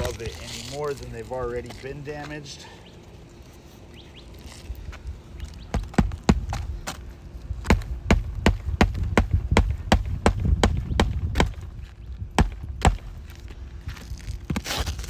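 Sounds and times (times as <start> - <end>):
hammer knocking roofing nails: 5.8 - 6.6, 7.7 - 11.7, 12.4 - 13.2.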